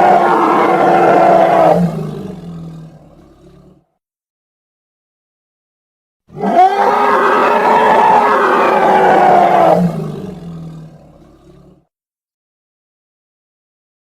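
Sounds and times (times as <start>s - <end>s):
creature roar: 0.0s - 3.8s, 6.3s - 11.9s.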